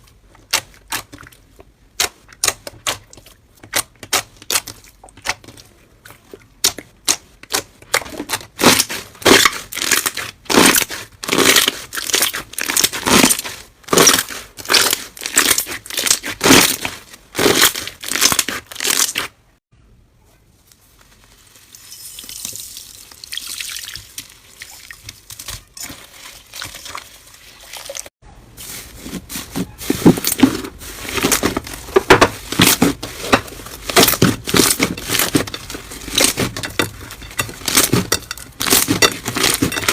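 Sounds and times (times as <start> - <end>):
slime crackling and popping: 8.3 - 19.3
soft hissy crinkling: 20.5 - 23.2.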